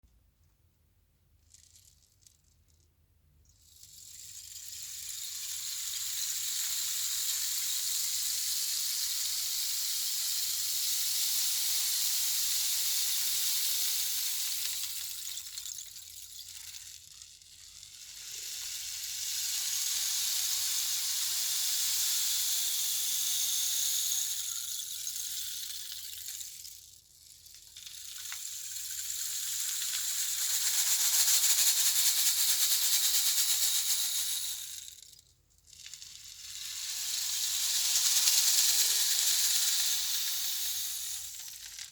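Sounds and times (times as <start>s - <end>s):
high sizzling hiss: 18.0s - 26.6s, 36.3s - 41.9s.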